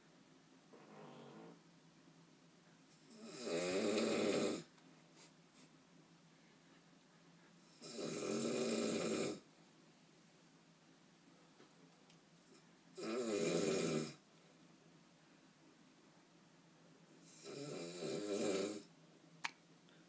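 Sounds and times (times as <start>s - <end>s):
man snoring loudly: 3.1s - 4.7s, 7.8s - 9.4s, 13.0s - 14.2s, 17.3s - 18.9s.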